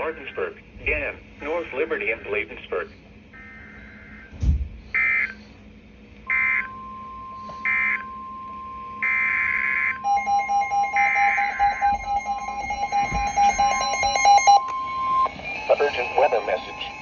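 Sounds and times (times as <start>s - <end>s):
low pulsing alert tone: 10.0s - 15.4s
digital data bursts screeching: 10.9s - 17.0s.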